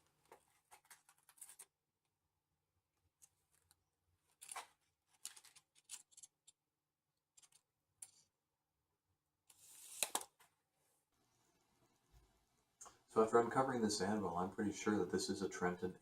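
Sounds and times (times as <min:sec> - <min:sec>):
scratchy scrapes and clicks: 0:00.3 - 0:01.7, 0:04.4 - 0:06.6.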